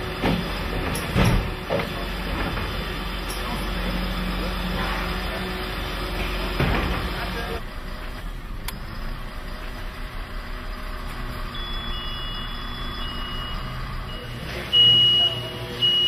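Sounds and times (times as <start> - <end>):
diesel engine running: 0.0 - 16.0
truck reversing alarm beeping: 8.8 - 16.0.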